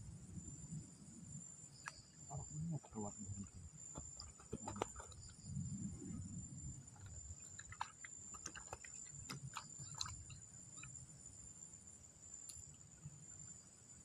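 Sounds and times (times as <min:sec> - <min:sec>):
insect chirring drone: 0:00.0 - 0:14.0
small clicks and chirps: 0:06.9 - 0:11.0, 0:12.4 - 0:12.9.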